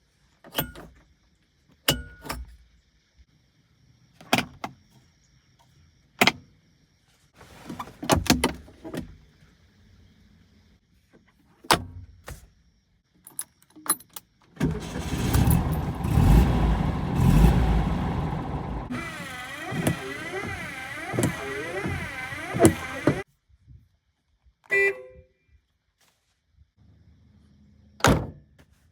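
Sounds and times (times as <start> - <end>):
car engine starting and revving: 14.6 - 23.2
sharp clicks: 18.8 - 23.2.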